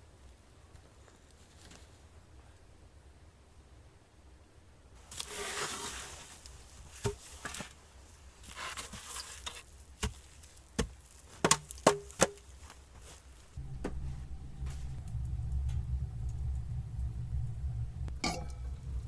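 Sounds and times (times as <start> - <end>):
scraping and rustling: 5.0 - 19.0.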